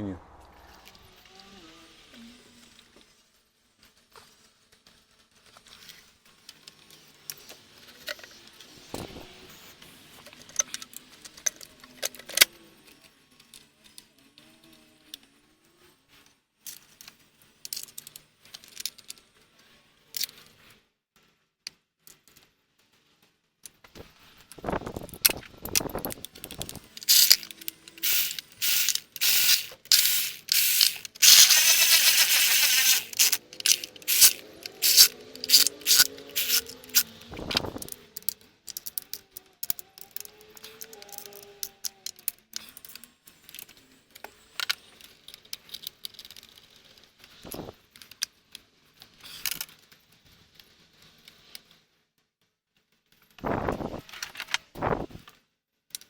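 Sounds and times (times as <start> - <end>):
ratchet wrench clicking: 25.7 - 42.3.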